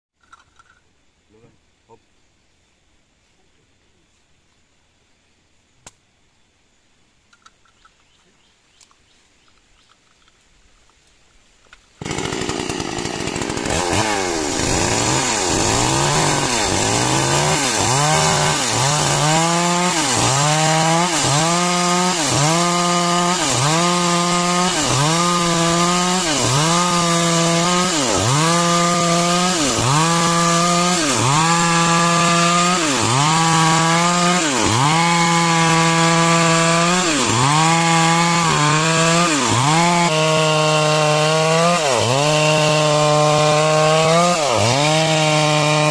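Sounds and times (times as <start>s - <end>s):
chainsaw cutting wood: 12.0s - 45.9s.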